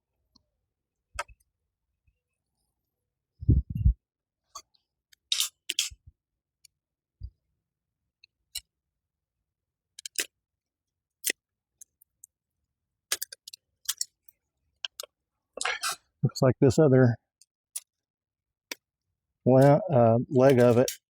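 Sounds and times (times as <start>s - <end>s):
vine snipping and snapping: 20.4s - 21.0s.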